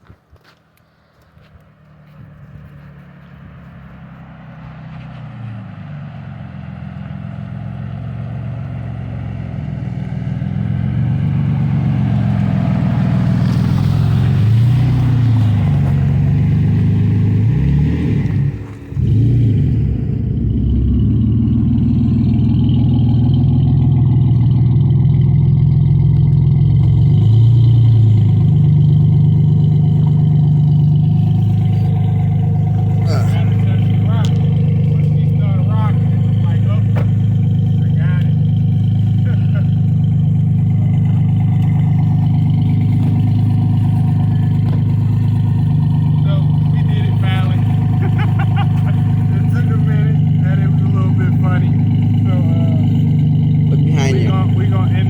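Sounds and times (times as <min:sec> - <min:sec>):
car engine revving: 0:01.6 - 0:55.0.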